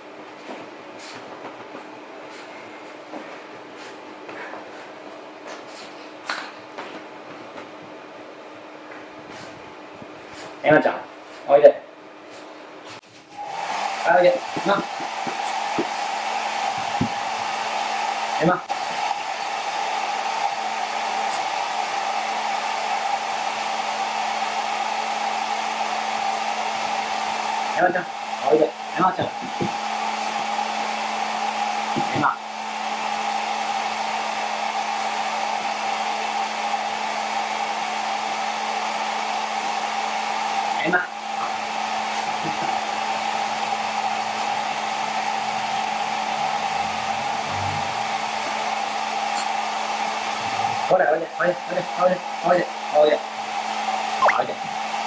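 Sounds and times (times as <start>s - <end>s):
hair dryer running: 13.2s - 55.0s.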